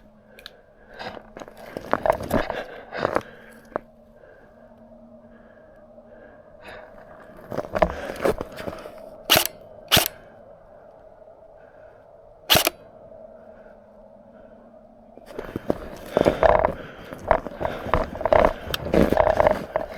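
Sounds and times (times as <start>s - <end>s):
airsoft gun shots: 9.3s - 10.1s, 12.5s - 12.7s
crunching and rustling in snow: 15.3s - 19.9s.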